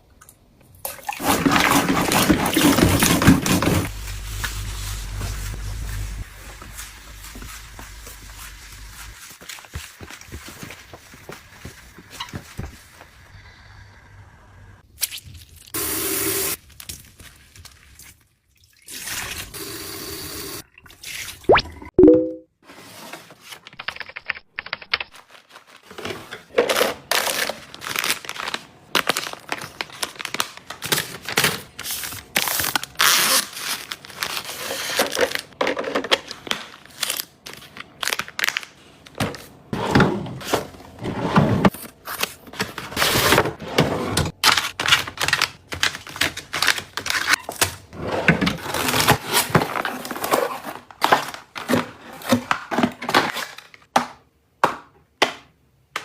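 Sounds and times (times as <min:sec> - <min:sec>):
packaging crinkling: 0:26.6 - 0:35.6.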